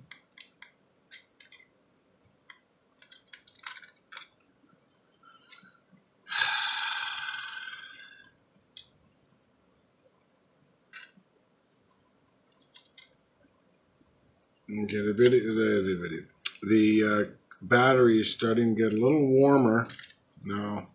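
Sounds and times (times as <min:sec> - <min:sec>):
loud breathy hiss: 0:06.3 - 0:08.2.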